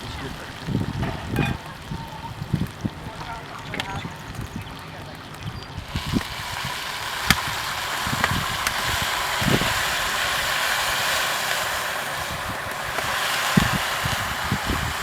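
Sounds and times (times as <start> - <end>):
sharp crackles: 0.0 - 15.0
meat sizzling in oil: 5.7 - 15.0.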